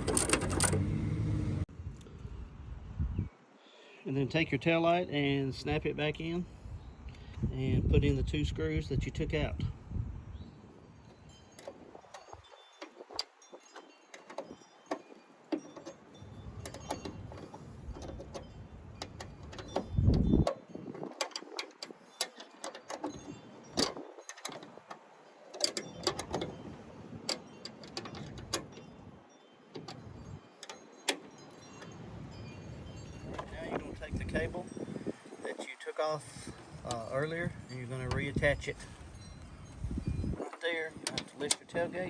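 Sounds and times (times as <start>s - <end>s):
tools and screws clinking: 0.0s - 0.9s, 10.5s - 34.9s, 36.5s - 41.8s.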